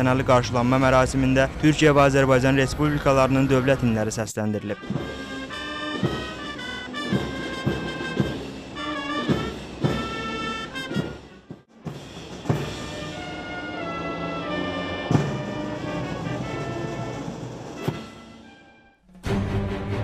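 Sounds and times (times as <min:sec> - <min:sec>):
drum beats: 0:04.8 - 0:14.0, 0:14.9 - 0:18.5
military brass band playing: 0:04.8 - 0:20.0.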